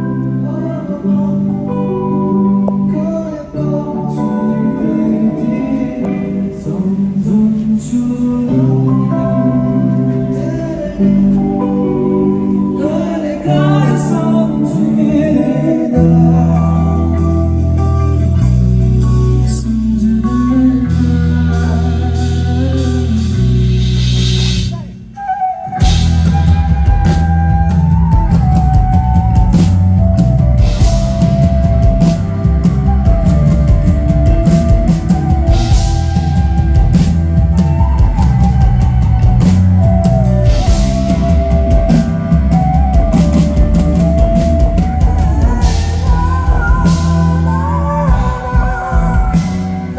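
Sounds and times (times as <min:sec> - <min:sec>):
bending lead melody: 0:00.0 - 0:49.9
guitar playing: 0:00.0 - 0:49.9
sustained bass notes: 0:00.0 - 0:49.9
drum kit: 0:16.0 - 0:25.1, 0:25.7 - 0:49.9.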